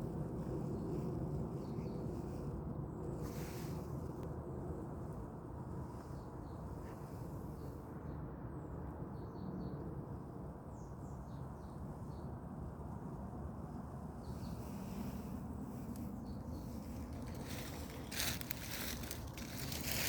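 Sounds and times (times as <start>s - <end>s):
steady low rumble: 12.5s - 20.0s.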